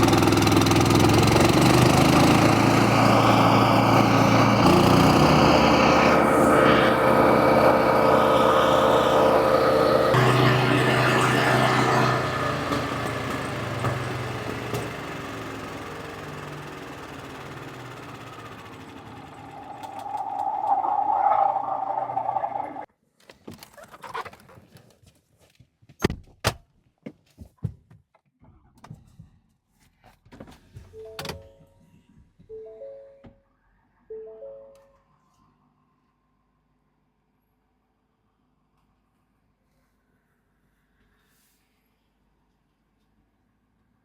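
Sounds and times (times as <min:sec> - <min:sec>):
engine running: 0:00.0 - 0:22.9.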